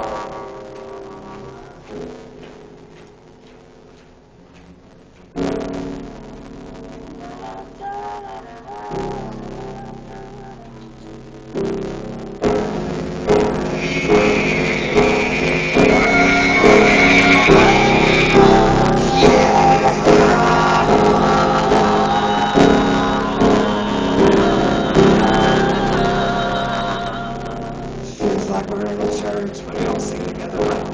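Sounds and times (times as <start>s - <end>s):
strummed chords: 0.0s - 30.9s
person singing: 7.2s - 11.1s, 13.5s - 30.9s.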